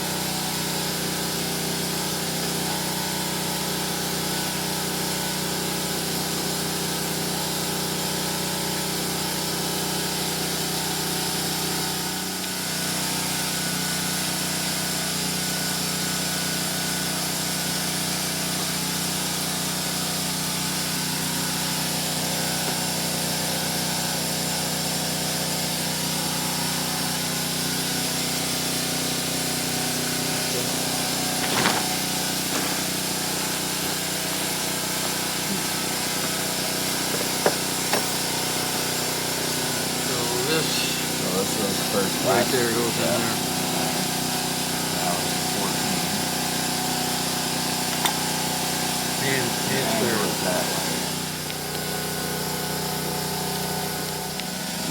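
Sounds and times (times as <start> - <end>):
machine motor humming: 26.0 - 54.9.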